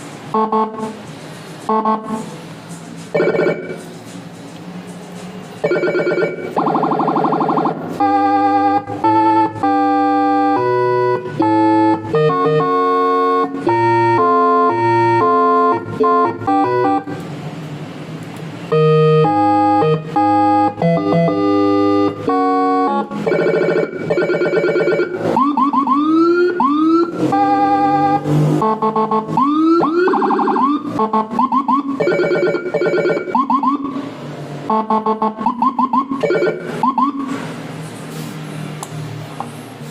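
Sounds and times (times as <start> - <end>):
electronic siren tones: 0.3 - 1.0, 1.7 - 2.3, 3.1 - 3.8, 5.6 - 17.2, 18.7 - 34.1, 34.7 - 37.4.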